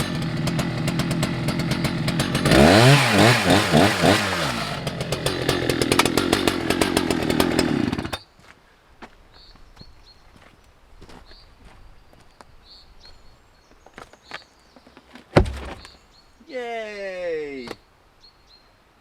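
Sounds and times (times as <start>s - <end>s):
chainsaw cutting log: 0.0s - 8.2s, 15.4s - 16.0s
bird chirps: 15.6s - 16.5s.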